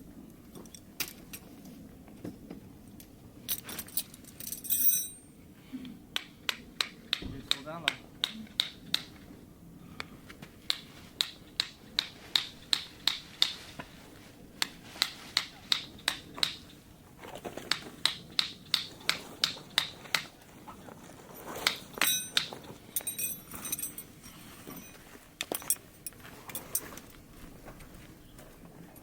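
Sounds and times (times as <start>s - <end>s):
bright ringing clinks: 3.5s - 5.3s, 22.0s - 25.8s.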